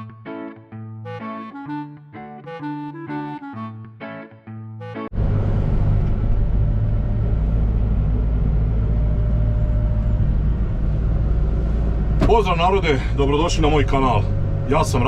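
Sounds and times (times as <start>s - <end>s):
vehicle engine running: 5.1s - 15.0s.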